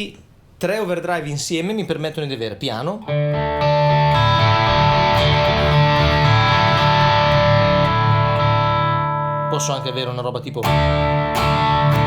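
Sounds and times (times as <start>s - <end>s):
overdriven electric guitar chords: 3.1s - 12.0s.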